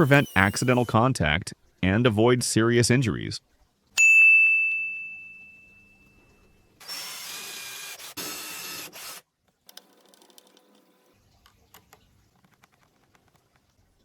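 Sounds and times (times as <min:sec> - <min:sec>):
handheld power tool running: 0:00.0 - 0:00.9, 0:06.8 - 0:09.2
bright ding: 0:04.0 - 0:06.6.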